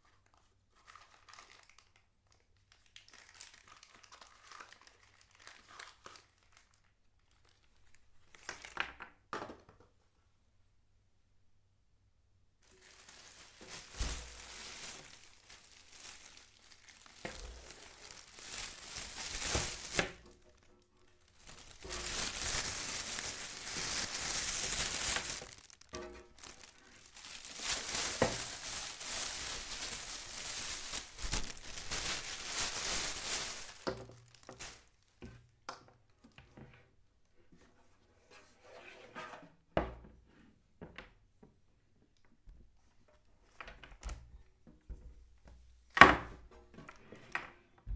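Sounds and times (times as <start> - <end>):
packaging crinkling and rustling: 0.3 - 8.8, 12.6 - 35.2.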